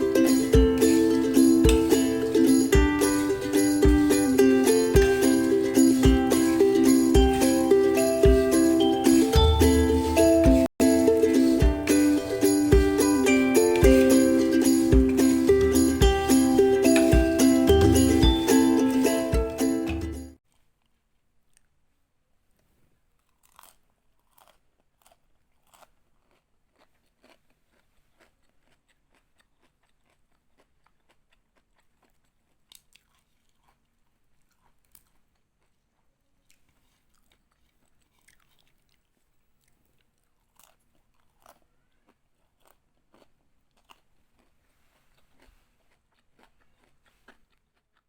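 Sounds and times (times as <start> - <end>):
crunching and chewing snack: 22.6 - 48.0.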